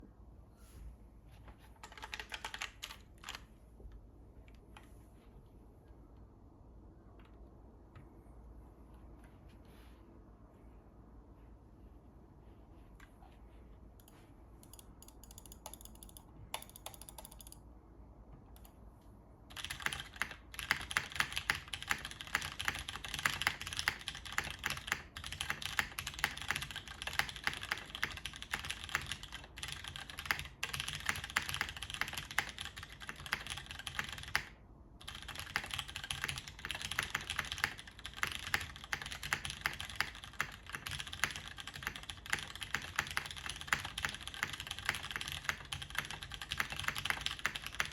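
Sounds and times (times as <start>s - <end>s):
mechanical keyboard typing: 1.6s - 3.5s, 14.0s - 17.6s, 19.5s - 47.9s.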